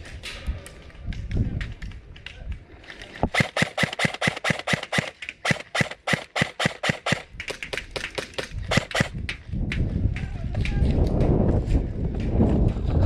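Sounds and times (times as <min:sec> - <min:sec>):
airsoft rifle firing single shots: 0:03.2 - 0:07.3, 0:08.2 - 0:09.1.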